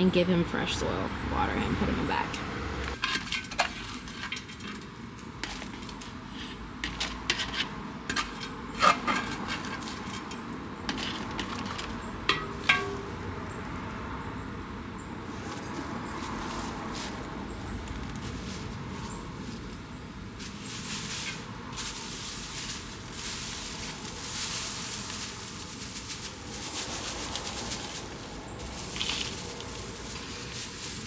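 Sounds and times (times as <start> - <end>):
hands mixing potting mix: 2.9 - 13.1, 15.2 - 31.0.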